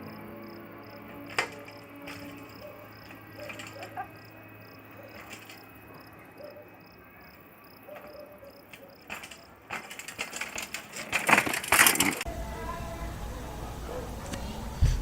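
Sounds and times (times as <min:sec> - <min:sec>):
cricket chirping: 0:00.0 - 0:12.5
knocks and rustles: 0:01.1 - 0:04.3, 0:05.1 - 0:05.8, 0:07.9 - 0:12.3.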